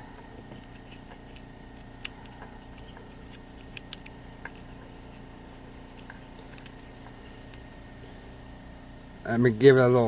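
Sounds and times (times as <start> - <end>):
small parts clicking and tapping: 0.0 - 5.2, 5.9 - 8.0
faint steady hum: 0.0 - 10.0.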